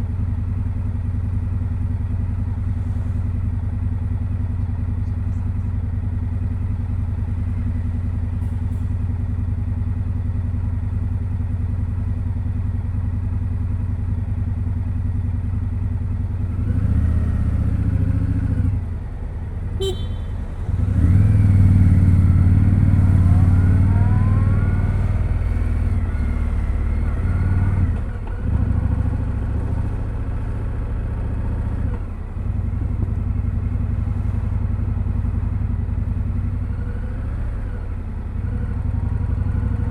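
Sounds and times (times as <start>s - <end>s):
motorcycle engine revving: 16.4s - 19.0s, 19.7s - 39.9s.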